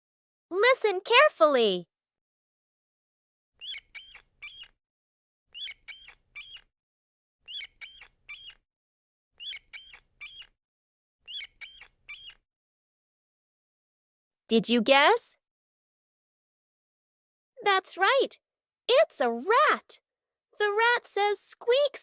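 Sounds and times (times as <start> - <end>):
rat squeaking: 3.6 - 4.8, 5.5 - 6.7, 7.5 - 8.6, 9.4 - 10.6, 11.3 - 12.4.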